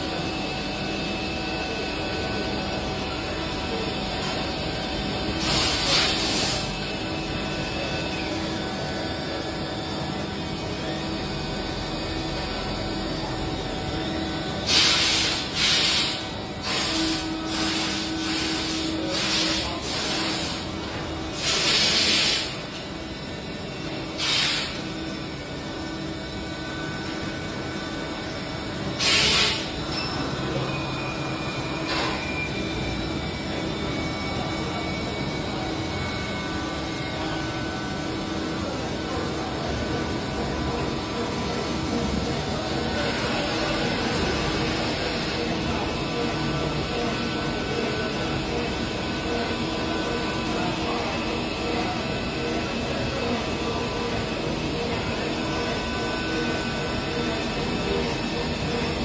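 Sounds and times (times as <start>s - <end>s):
machine tool humming: 3.7s - 39.2s.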